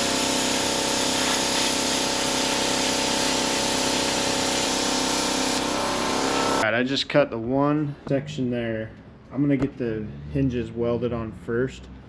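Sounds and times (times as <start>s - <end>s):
plasma cutter hissing: 0.0s - 6.6s.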